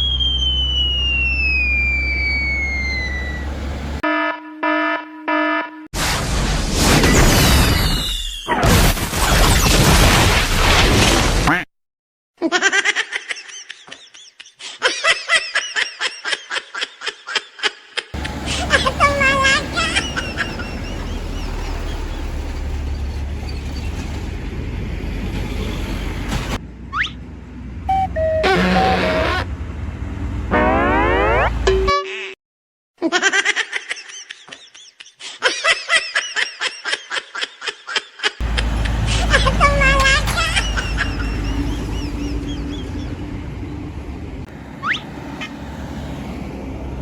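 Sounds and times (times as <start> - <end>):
high-pitched giggling: 12.4 - 21.1, 33.0 - 43.0
high-pitched laughter: 12.4 - 21.2, 33.0 - 43.0.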